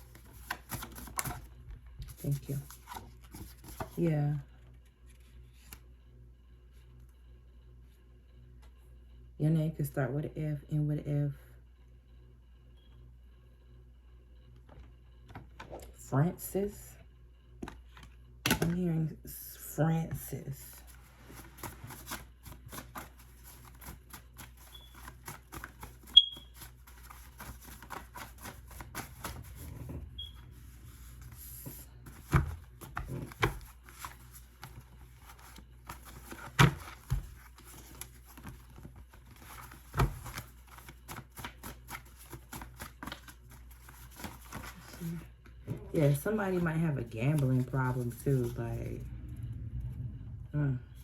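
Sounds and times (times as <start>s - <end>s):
cards shuffled clicking: 21.4s - 29.6s, 32.0s - 45.0s.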